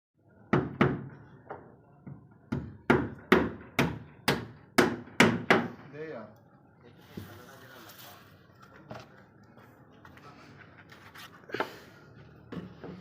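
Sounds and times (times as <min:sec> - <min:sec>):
hammer strikes: 0:02.5 - 0:05.9.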